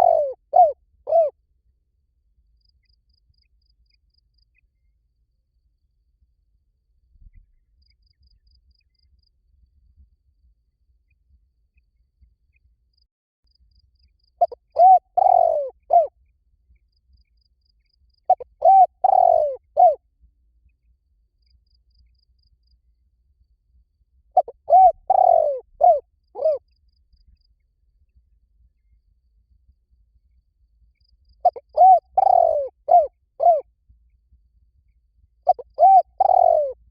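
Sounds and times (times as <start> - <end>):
dove cooing: 0.0 - 1.4, 14.4 - 16.1, 18.3 - 20.0, 24.4 - 26.6, 31.4 - 33.6, 35.5 - 36.9.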